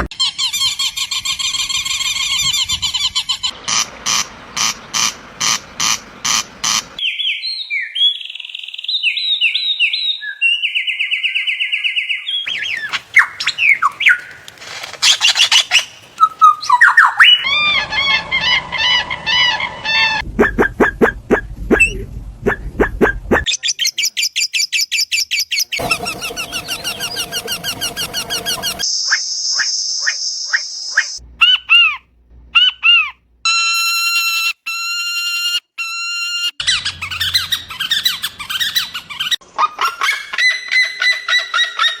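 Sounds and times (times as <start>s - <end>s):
bird falling calls: 10.6s - 20.2s, 25.7s - 28.8s
bird whistled notes: 15.2s - 17.5s
bird hissing buzz: 25.8s - 28.8s.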